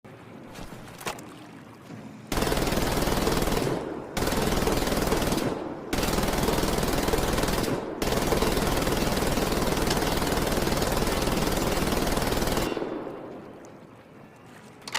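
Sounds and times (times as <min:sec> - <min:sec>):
machine gun bursts: 0:02.3 - 0:12.9.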